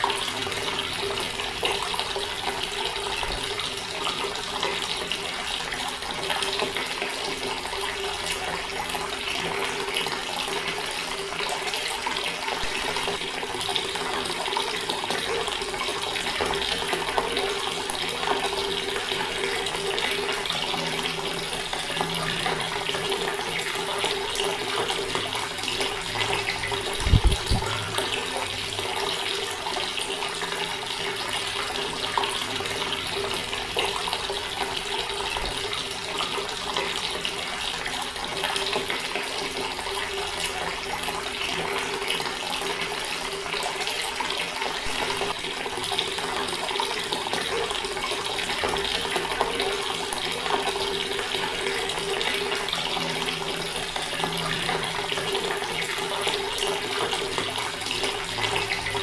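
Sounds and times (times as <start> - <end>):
water tap running: 0.0 - 59.0.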